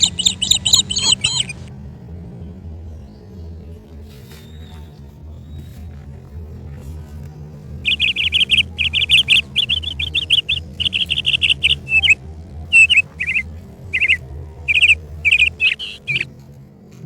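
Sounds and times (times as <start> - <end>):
bird chirping: 0.0 - 1.6, 7.8 - 16.3
low steady hum: 0.0 - 4.0, 6.4 - 16.6.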